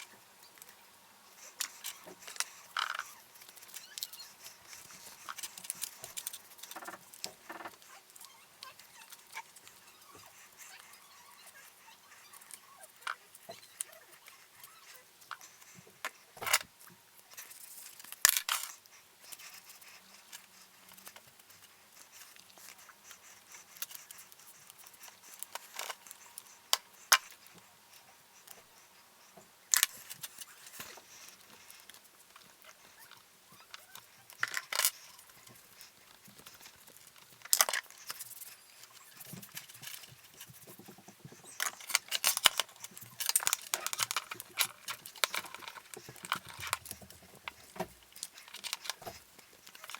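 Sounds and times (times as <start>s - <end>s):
small parts and tools clattering: 33.7s - 49.9s.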